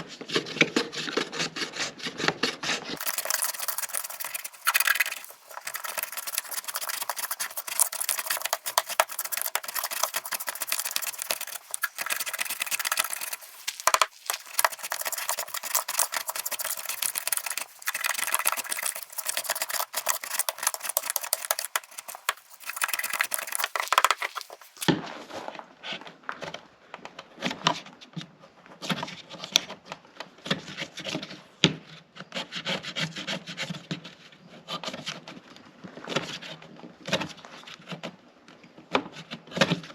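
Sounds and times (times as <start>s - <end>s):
rasp scraping wood: 0.5s - 24.9s.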